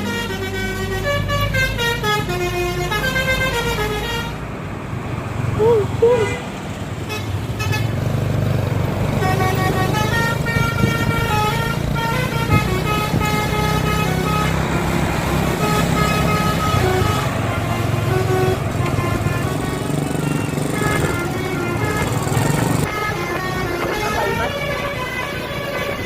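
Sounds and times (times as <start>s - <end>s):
bus multi-tone horn tune: 0.0s - 4.6s, 6.1s - 26.0s
bus engine hum: 0.0s - 26.0s.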